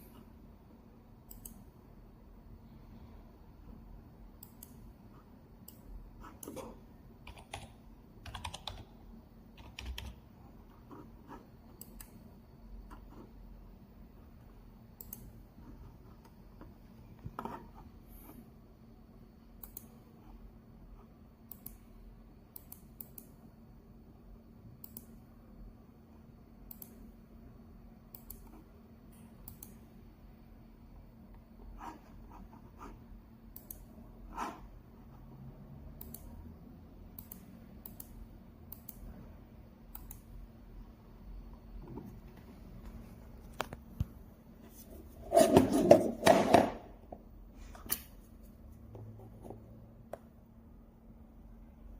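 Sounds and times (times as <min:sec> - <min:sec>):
faint steady hum: 0:00.0 - 0:51.9
small clicks: 0:01.3 - 0:01.6, 0:15.0 - 0:15.4, 0:29.4 - 0:29.8, 0:39.9 - 0:40.3.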